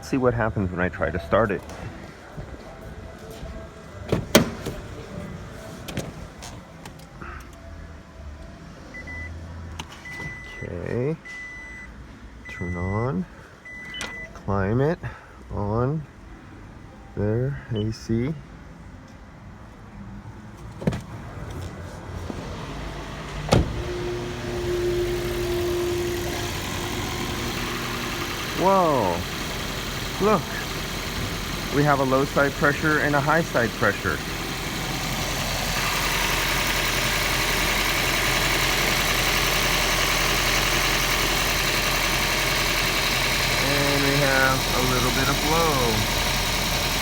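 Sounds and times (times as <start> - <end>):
blower air rushing: 22.4 - 47.0
compressor whine: 22.9 - 47.0.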